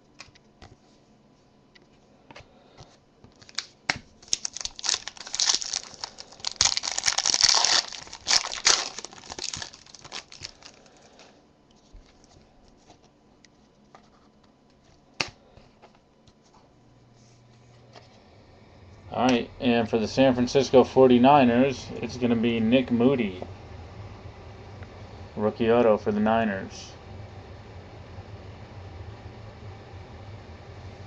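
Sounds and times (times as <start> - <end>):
foil wrapper tearing and crinkling: 3.4 - 11.3.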